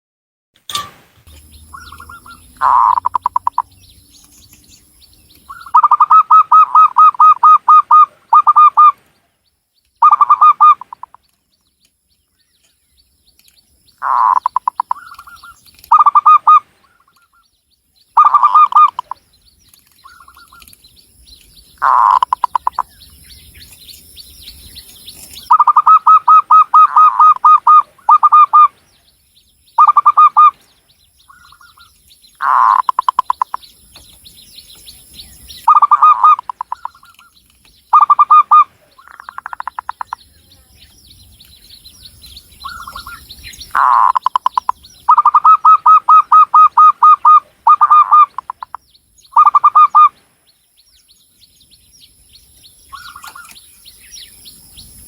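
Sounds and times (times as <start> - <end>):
dove cooing: 1.7 - 3.7, 5.5 - 9.0, 10.0 - 11.2, 14.0 - 16.7, 18.2 - 19.2, 21.8 - 22.9, 25.4 - 28.7, 35.7 - 37.2, 38.0 - 40.1, 43.8 - 48.8, 49.4 - 50.1.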